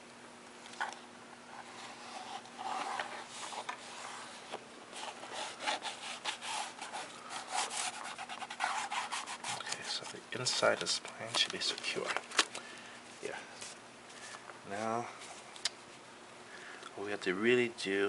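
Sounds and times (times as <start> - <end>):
rubbing strokes on paper: 1.5 - 10.2.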